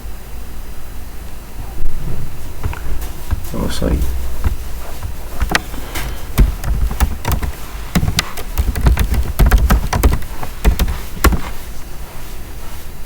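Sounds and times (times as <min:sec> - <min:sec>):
keyboard and mouse clicks: 0:02.6 - 0:11.5
low thumps on desk: 0:02.6 - 0:11.6.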